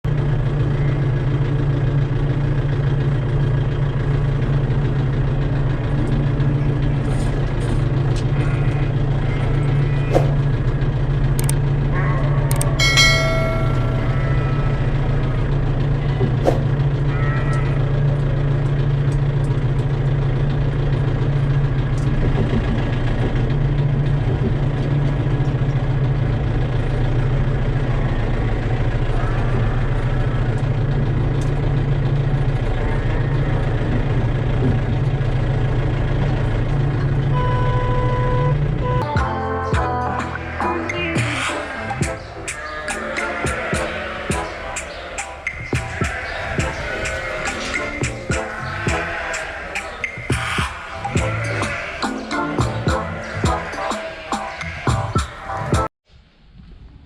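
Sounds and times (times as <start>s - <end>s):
tractor engine running: 0.0s - 55.9s
sharp clicks: 11.4s - 11.6s, 12.5s - 12.8s
metallic clank: 12.8s - 14.8s.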